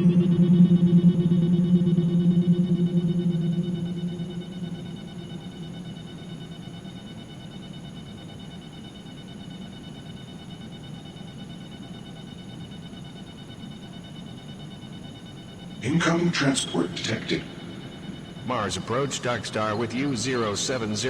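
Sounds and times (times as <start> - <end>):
synthesized ambient drone: 0.0 - 7.6, 15.7 - 21.0
faint high whistling tones: 0.0 - 8.0.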